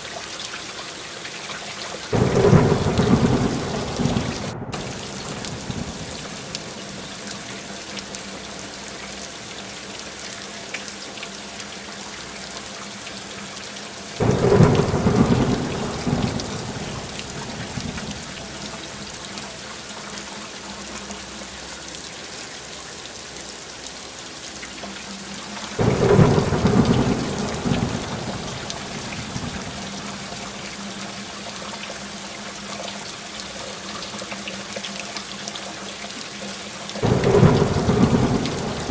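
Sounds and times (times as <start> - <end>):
steady rain falling: 0.0 - 38.9
rolls of thunder: 2.1 - 6.8, 14.2 - 18.7, 25.8 - 29.9, 37.0 - 38.9.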